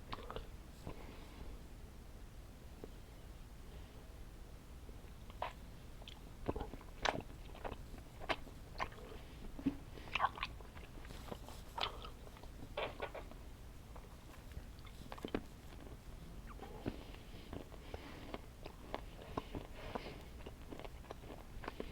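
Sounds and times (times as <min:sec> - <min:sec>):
chewing sticky candy: 0:05.3 - 0:21.9.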